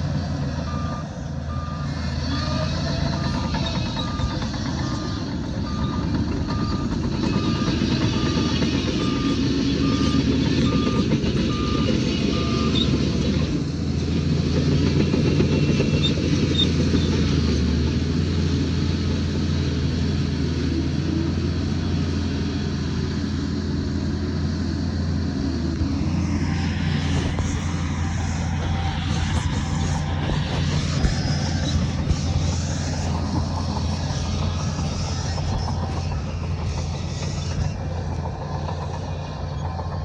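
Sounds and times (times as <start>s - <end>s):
heavy diesel machinery running: 0.0s - 40.0s
reversing alarm beeping: 0.6s - 13.0s.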